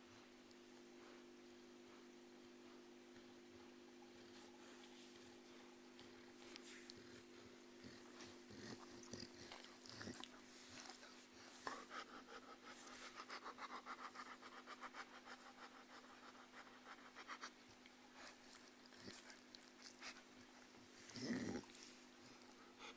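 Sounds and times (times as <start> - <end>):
puppy panting: 6.2 - 22.9.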